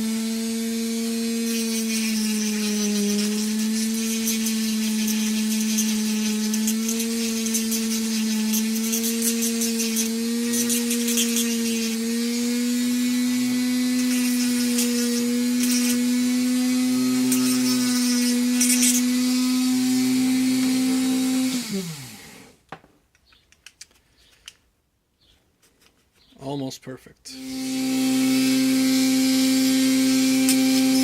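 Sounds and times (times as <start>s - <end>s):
rotary tool whine: 0.0s - 22.6s, 27.3s - 31.0s
scratchy grinding: 0.7s - 22.5s.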